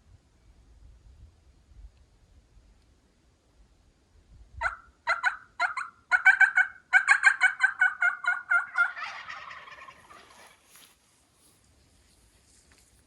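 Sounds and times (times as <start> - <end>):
turkey yelps: 4.6 - 10.8.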